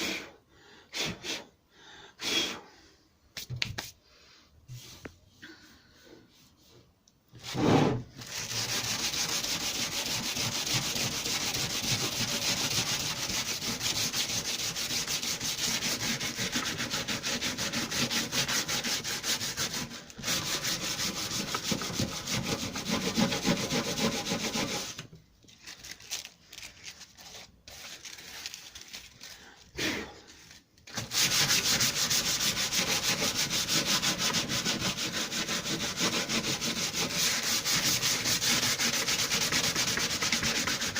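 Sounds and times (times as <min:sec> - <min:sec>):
sanding metal filler: 0:07.6 - 0:25.0, 0:31.0 - 0:40.9.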